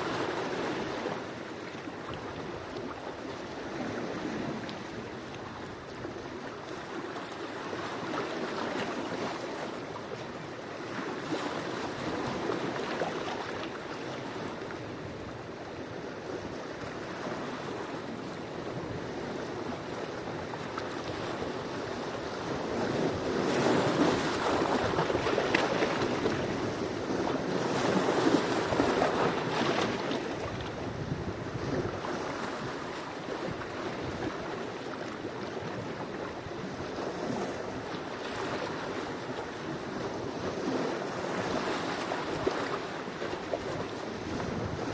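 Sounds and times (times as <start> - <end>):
sea waves washing onto shore: 0.0 - 44.9.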